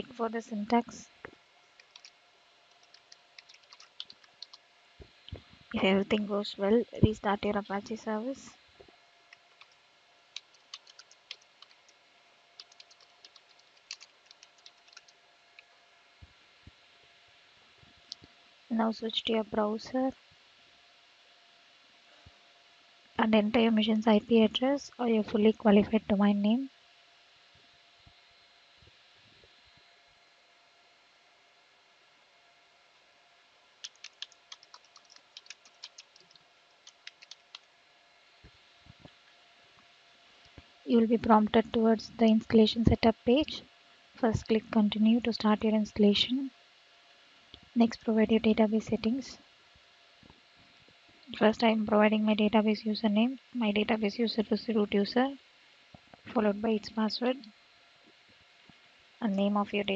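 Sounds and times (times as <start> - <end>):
typing on computer keyboard: 1.8 - 4.6, 9.3 - 12.0, 12.6 - 15.2, 33.8 - 37.7.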